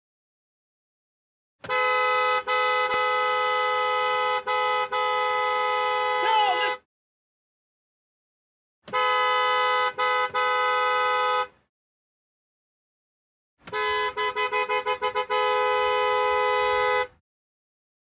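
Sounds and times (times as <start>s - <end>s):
car horn honking: 1.6s - 6.9s, 8.8s - 11.7s, 13.6s - 17.2s.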